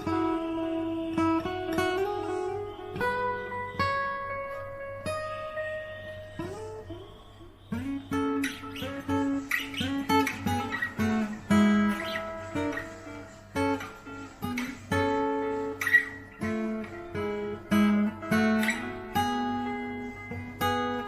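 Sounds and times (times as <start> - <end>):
acoustic guitar melody and strummed chords: 0.0 - 21.0.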